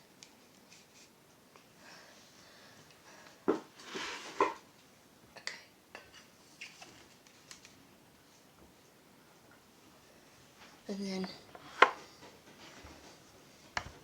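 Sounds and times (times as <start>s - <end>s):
plastic scrape: 3.8s - 4.6s.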